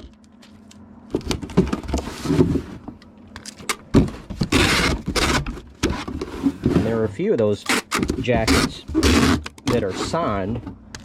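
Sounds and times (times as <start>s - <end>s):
cardboard box rustling and scraping: 1.2s - 3.0s, 3.9s - 10.6s.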